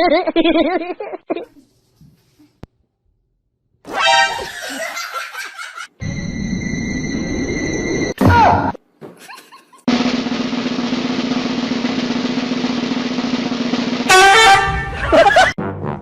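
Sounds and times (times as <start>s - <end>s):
snare drum roll: 9.9s - 15.4s.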